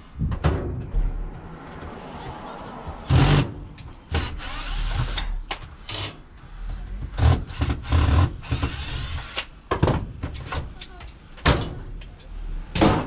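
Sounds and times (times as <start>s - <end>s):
scrap metal knocks and clanks: 0.1s - 2.0s.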